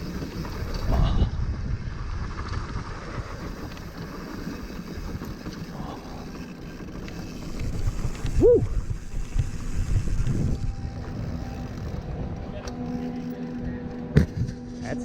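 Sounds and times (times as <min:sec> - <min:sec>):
bike tyre rumble and rattle: 0:00.0 - 0:14.9
wind on microphone: 0:00.5 - 0:03.6, 0:07.4 - 0:12.6.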